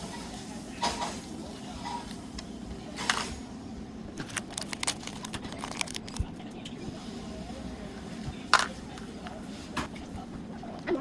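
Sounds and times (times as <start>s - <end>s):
packaging rustle: 4.2s - 6.2s.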